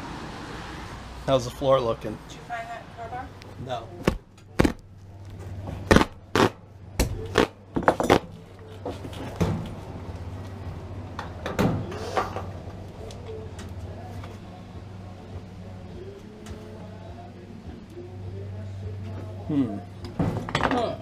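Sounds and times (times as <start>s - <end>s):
steady low hum: 2.4s - 20.2s.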